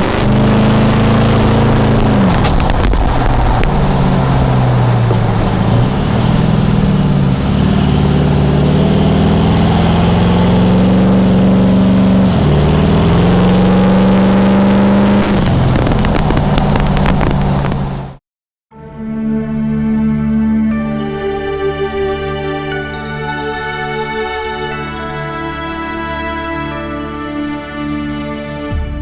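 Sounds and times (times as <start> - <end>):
car engine accelerating: 0.0 - 18.2.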